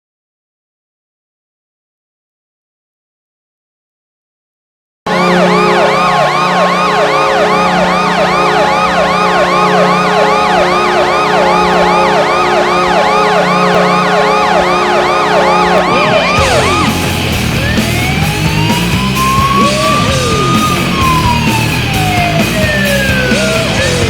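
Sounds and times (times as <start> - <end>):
goal horn chord: 5.1 - 24.0
siren sweeping down: 5.1 - 24.0.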